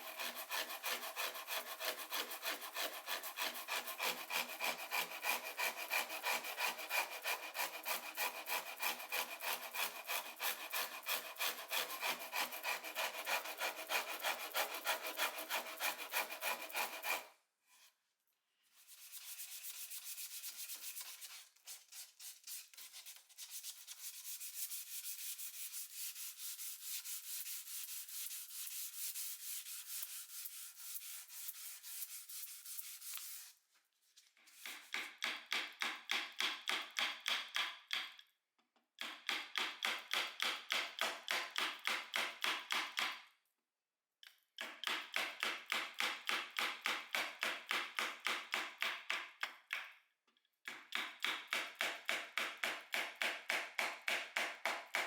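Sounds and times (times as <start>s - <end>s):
hand tool sanding wood: 0.0s - 17.3s.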